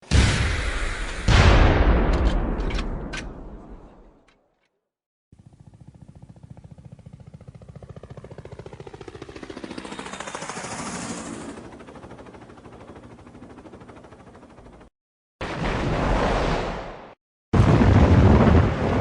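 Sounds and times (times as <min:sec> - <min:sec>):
heavy explosion boom: 0:00.0 - 0:03.1, 0:17.6 - 0:19.0.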